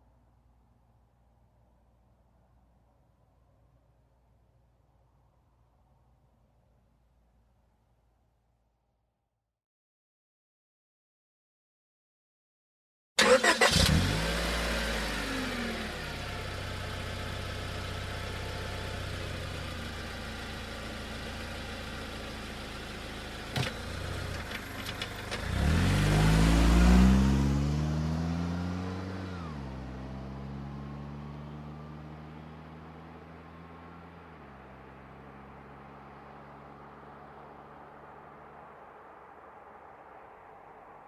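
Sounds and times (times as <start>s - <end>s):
car engine revving: 13.2s - 19.0s, 22.4s - 41.0s
car engine starting and idling: 13.2s - 41.0s.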